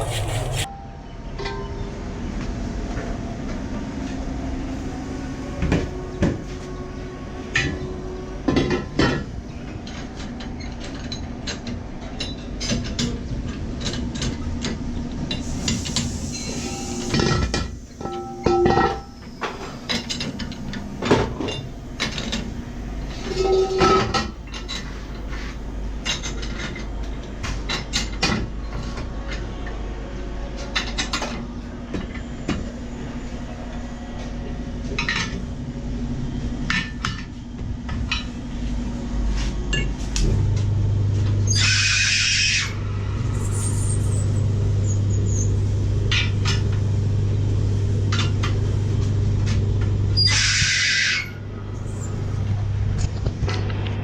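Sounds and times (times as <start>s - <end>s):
hiss bursts: 15.4s - 18.0s.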